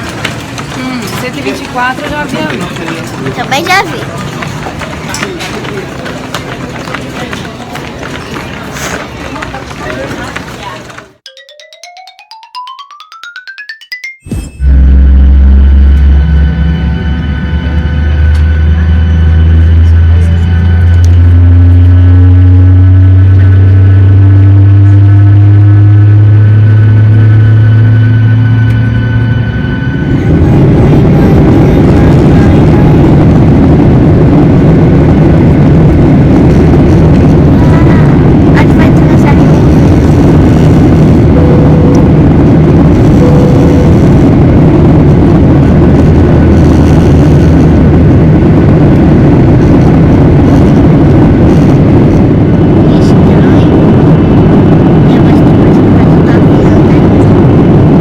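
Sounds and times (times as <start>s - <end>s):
jet engines droning: 0.0s - 11.2s, 14.6s - 58.0s
high whining tones: 14.2s - 58.0s
rough rushing noise: 14.3s - 58.0s.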